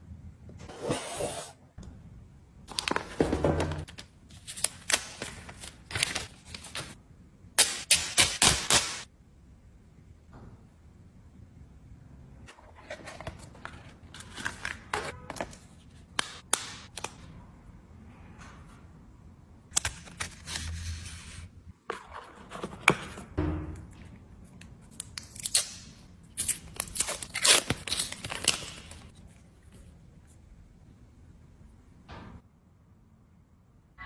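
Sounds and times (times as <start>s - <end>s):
plastic wrap tearing and crinkling: 25.3s - 29.2s.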